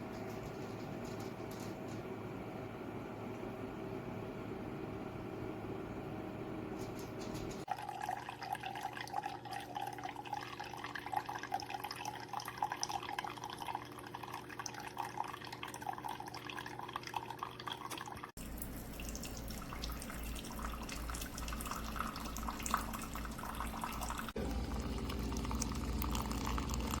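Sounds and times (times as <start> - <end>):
liquid streaming into a cup: 7.7 - 27.0
low pump hum: 18.3 - 27.0.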